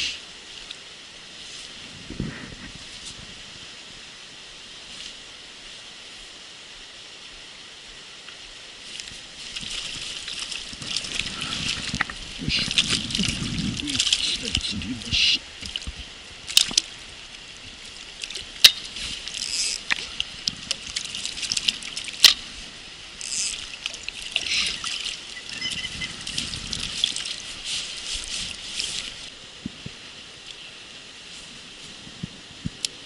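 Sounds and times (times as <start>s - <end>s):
water trickling and splashing: 8.2s - 30.0s.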